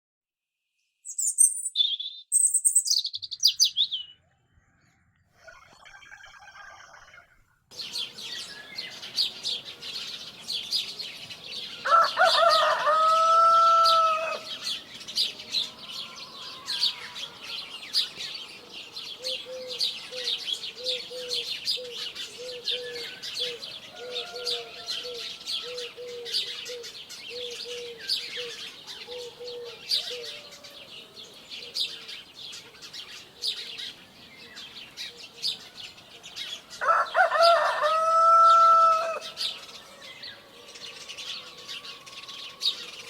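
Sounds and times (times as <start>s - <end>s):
small birds chirping: 0.8s - 43.0s
rooster crowing: 11.8s - 14.6s, 15.6s - 17.7s, 23.0s - 25.9s, 36.8s - 39.4s, 40.0s - 43.0s.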